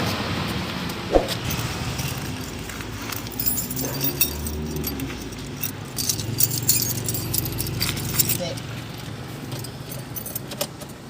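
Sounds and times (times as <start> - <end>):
small metal objects clinking: 1.4 - 8.7, 9.5 - 10.8.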